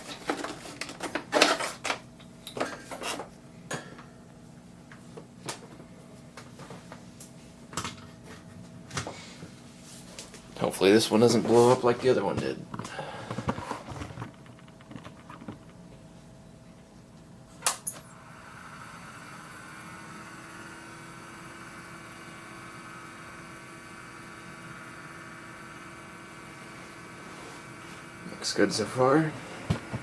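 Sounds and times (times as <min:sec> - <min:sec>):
oscilloscope humming: 0:09.5 - 0:30.0.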